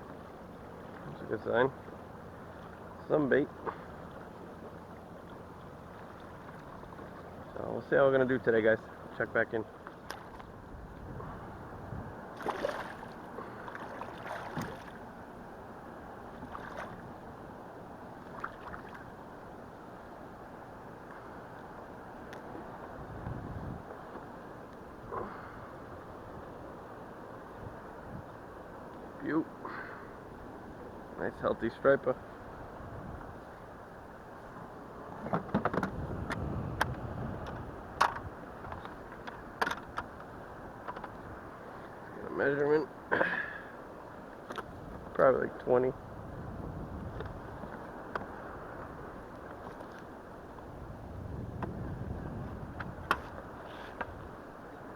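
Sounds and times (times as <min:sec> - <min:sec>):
hiss of wind and water: 0:00.0 - 0:54.9
water splashing against kayak hull: 0:08.9 - 0:11.4, 0:12.2 - 0:15.3, 0:16.1 - 0:17.3, 0:18.2 - 0:19.2, 0:46.2 - 0:54.9.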